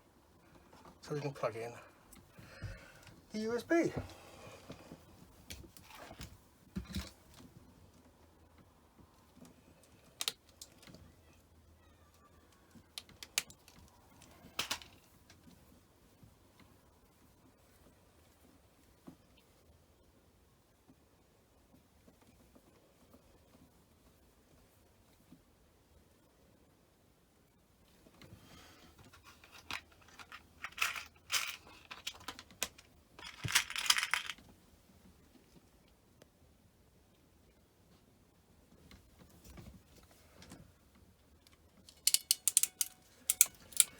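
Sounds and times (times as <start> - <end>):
plastic and metal parts clicking: 12.9 - 15.0, 29.1 - 34.4, 41.5 - 43.9
cable connectors clicking: 41.5 - 43.9.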